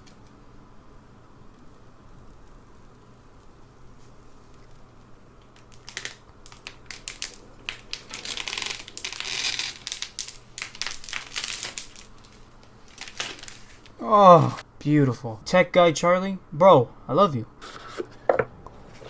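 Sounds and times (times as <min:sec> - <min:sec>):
plastic packaging crinkling: 0:05.5 - 0:14.0.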